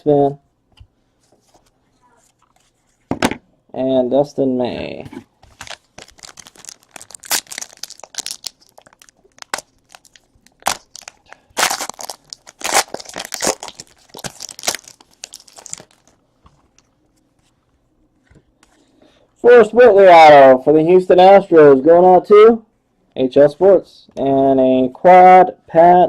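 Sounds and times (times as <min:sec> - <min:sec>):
card packaging crinkling: 0:05.5 - 0:16.2.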